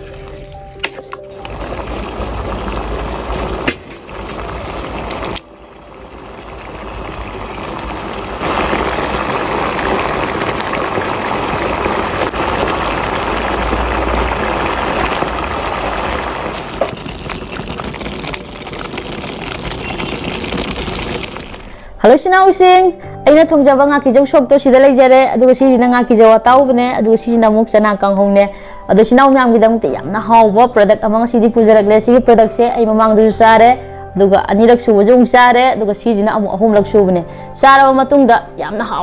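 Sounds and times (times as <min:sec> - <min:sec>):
running water: 0:01.3 - 0:21.8.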